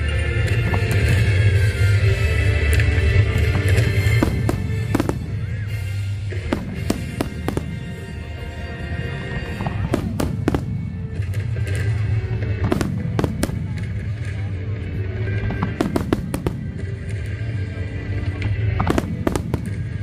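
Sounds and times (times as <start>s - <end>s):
fireworks bursting: 3.4s - 14.4s, 15.2s - 20.0s.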